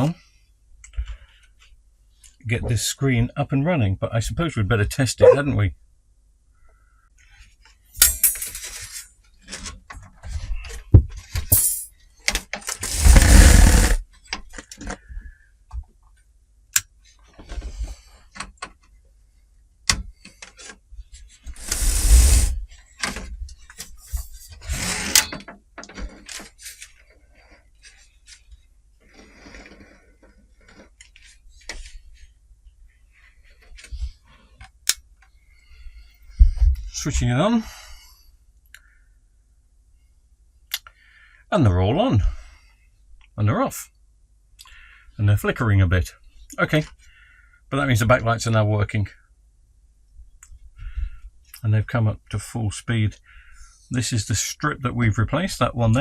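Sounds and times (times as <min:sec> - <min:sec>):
loud scraping: 0:12.8 - 0:14.0, 0:21.6 - 0:22.6.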